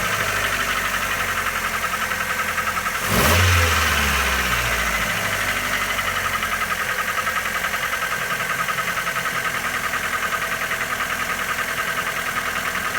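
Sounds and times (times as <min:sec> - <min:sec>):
car engine idling with knock: 0:00.0 - 0:12.9.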